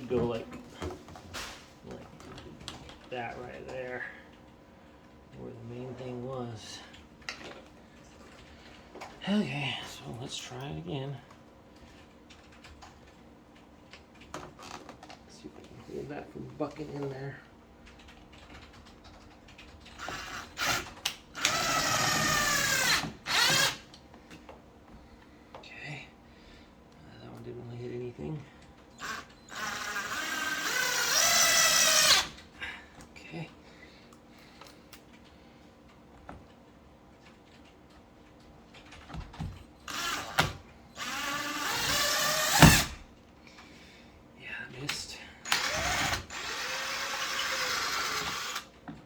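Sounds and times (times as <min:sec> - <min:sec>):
cordless drill driving a screw: 0:20.0 - 0:23.9, 0:29.0 - 0:32.4, 0:39.8 - 0:43.0, 0:45.4 - 0:48.7.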